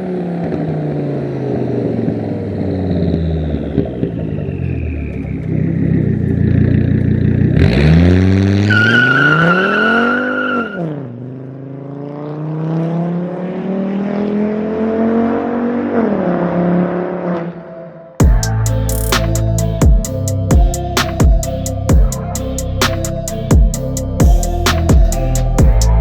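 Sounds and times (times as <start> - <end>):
car engine revving: 0.4 - 26.0
turbo whine: 18.2 - 26.0.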